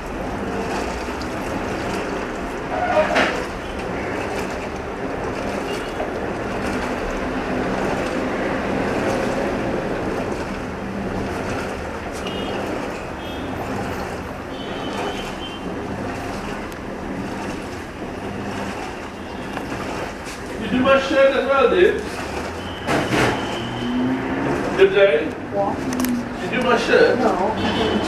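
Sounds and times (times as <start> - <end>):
washing machine churning water: 0.0 - 28.0.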